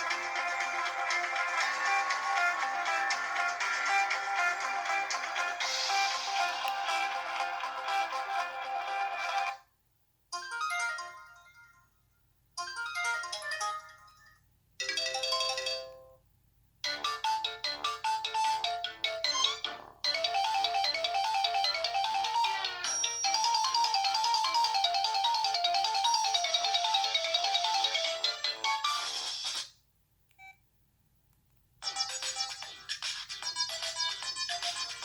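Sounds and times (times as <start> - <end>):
phone ringtone melody: 10.4 - 11.8, 12.6 - 16.2, 16.8 - 29.3
phone ringtone chimes: 12.6 - 16.1, 17.1 - 29.0.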